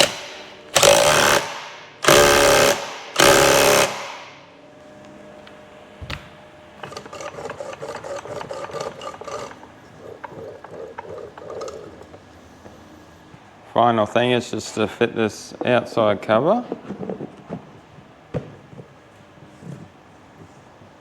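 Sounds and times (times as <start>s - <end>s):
power wrench bursts: 0.8s - 4.2s.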